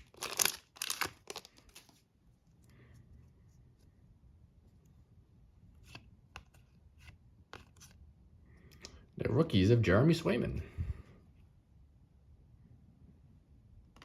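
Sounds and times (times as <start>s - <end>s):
trading cards rustling: 0.0s - 2.1s.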